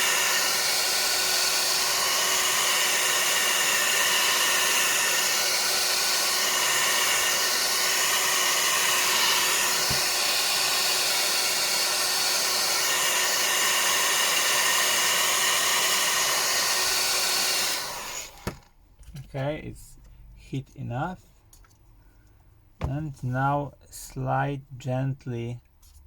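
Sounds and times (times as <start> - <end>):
hair dryer blowing: 0.0 - 18.6.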